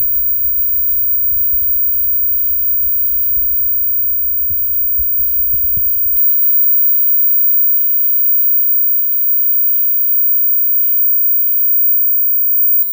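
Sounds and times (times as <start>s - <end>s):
loud crackly high-pitched hiss: 0.0s - 6.2s.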